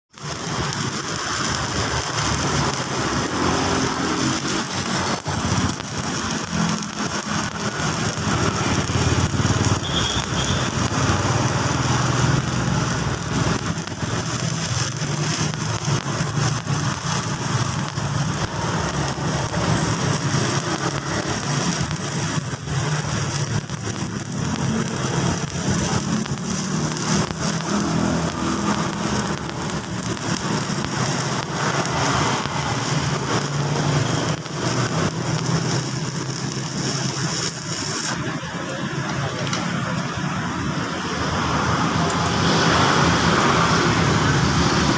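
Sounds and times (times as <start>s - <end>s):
welding arc crackling: 0.0s - 44.9s.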